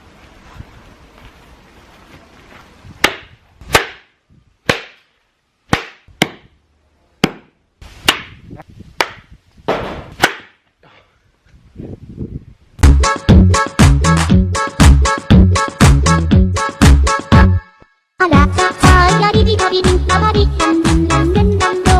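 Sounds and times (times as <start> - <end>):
low background noise: 0.0 - 9.6
sharp cracks: 9.0 - 10.6.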